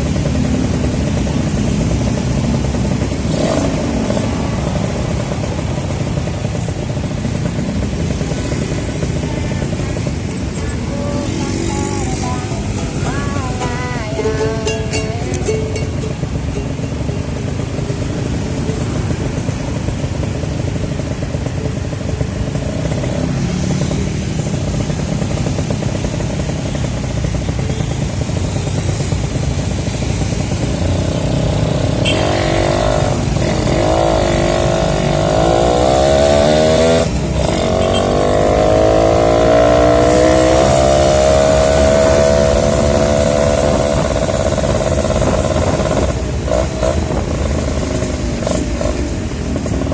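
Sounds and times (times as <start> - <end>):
two-stroke motorcycle engine: 0.0 - 49.9.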